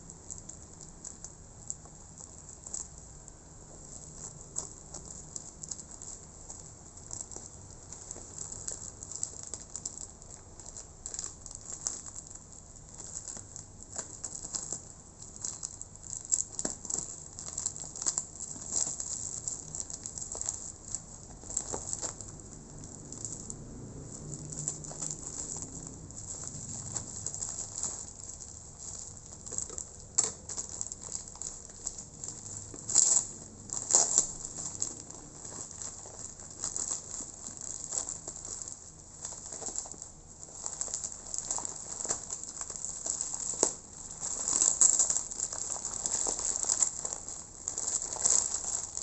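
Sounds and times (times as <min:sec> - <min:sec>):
packaging rustling and crackling: 0:00.0 - 0:49.0.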